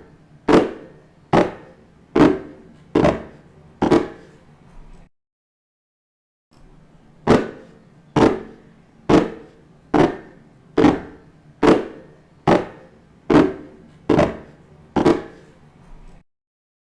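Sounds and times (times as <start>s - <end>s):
sharp knocks: 0.5s - 4.3s, 7.3s - 15.4s.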